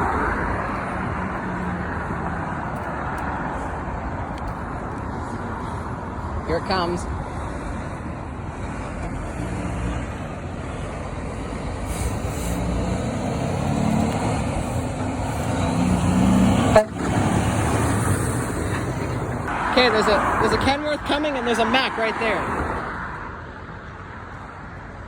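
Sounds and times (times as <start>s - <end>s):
truck passing: 0.0s - 25.0s
low truck horn: 15.7s - 17.5s.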